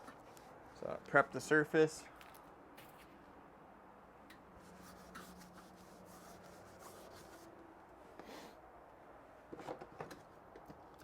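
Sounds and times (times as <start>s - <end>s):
rubbing and wiping strokes: 4.6s - 7.5s.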